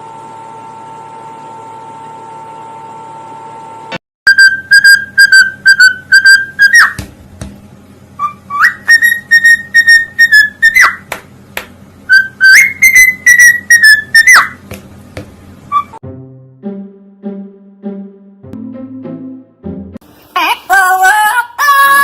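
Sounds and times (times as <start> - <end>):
loud whistling: 4.3 - 7.0, 8.2 - 11.0, 12.1 - 14.6.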